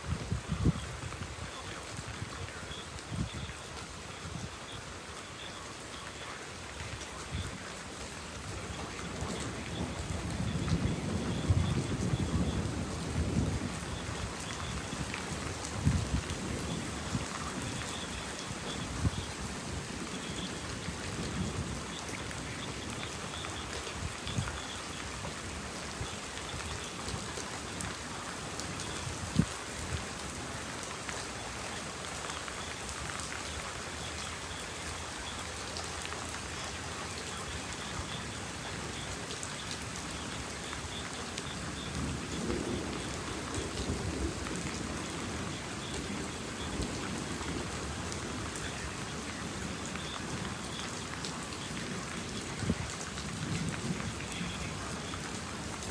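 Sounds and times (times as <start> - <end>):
heavy rain: 0.0 - 55.9
low rumble of thunder: 8.6 - 24.7, 41.5 - 55.9.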